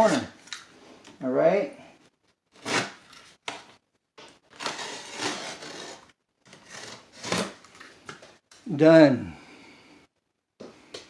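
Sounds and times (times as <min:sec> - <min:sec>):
blade rasping through drywall: 0:04.6 - 0:07.6.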